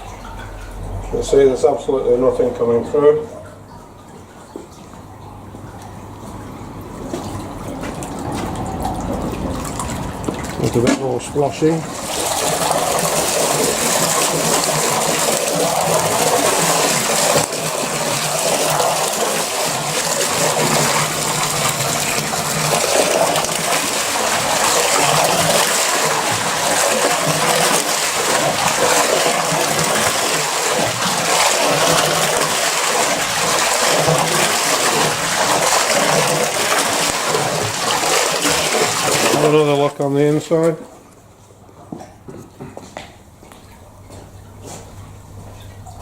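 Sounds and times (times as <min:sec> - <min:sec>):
water gushing from hose: 0:07.0 - 0:40.2.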